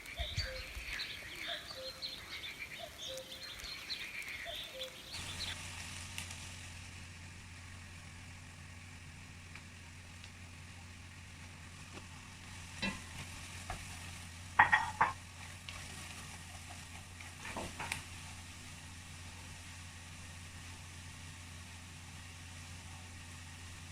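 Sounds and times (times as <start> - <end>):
food sizzling in a pot: 0.0 - 10.0, 11.6 - 23.9
steady low hum: 0.0 - 23.9
utensil clattering against pot: 14.6 - 15.2.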